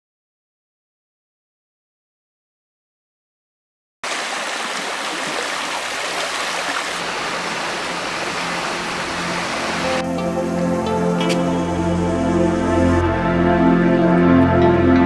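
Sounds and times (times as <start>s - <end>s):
river water rushing: 4.0s - 10.0s.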